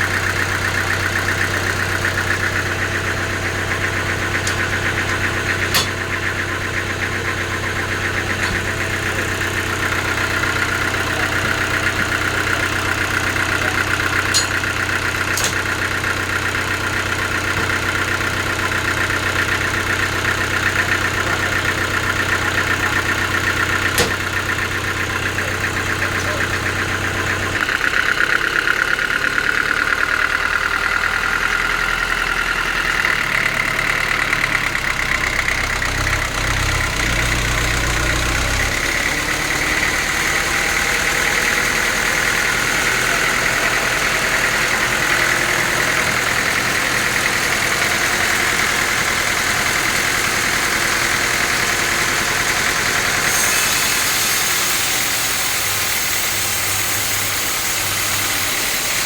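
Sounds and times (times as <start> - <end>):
sawmill machinery drone and whine: 0.0 - 59.0
sharp click: 5.8 - 6.0, 15.4 - 15.6.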